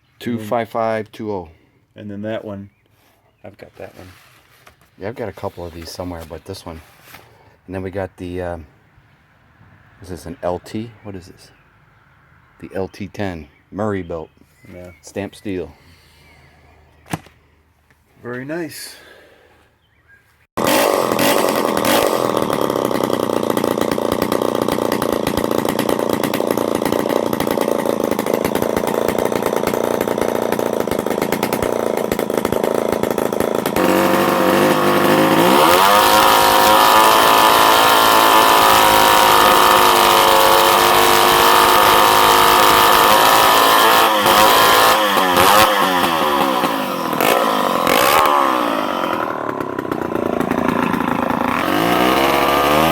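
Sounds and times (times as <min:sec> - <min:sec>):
chainsaw engine running: 0:20.6 - 0:52.9.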